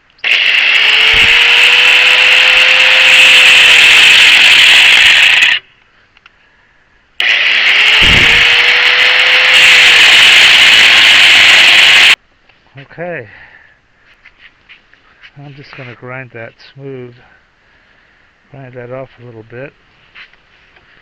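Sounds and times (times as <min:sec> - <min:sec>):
angle grinder cutting steel: 0:00.2 - 0:05.7, 0:07.2 - 0:12.2.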